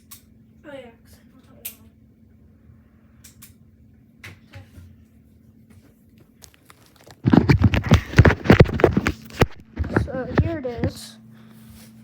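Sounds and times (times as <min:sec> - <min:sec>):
rapid clatter of knocks and rattles: 0:07.2 - 0:11.0.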